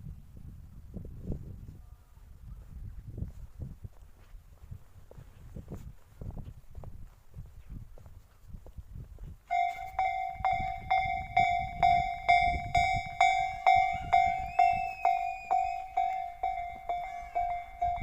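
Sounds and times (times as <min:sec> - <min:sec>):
level-crossing warning bell: 0:09.5 - 0:18.0.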